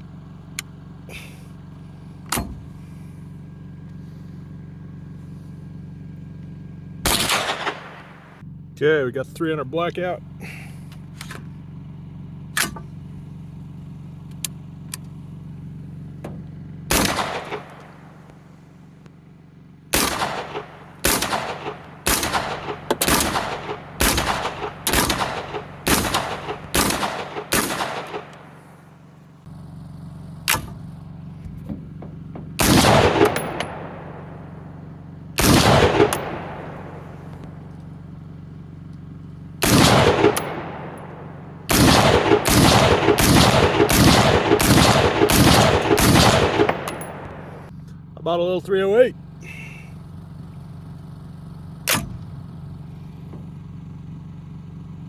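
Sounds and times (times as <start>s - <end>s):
steady low hum: 0.0s - 54.0s
rifle shots: 7.0s - 8.4s, 16.9s - 18.5s, 19.9s - 28.9s, 32.6s - 37.7s, 39.6s - 47.7s, 51.9s - 52.2s.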